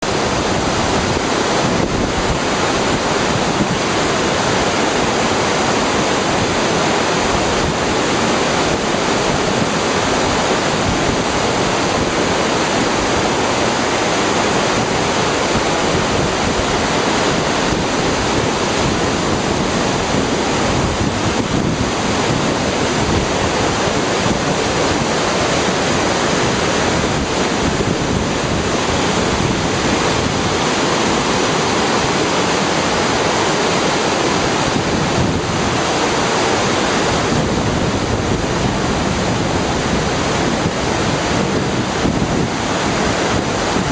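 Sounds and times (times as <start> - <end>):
waterfall crashing and splashing: 0.0 - 43.9.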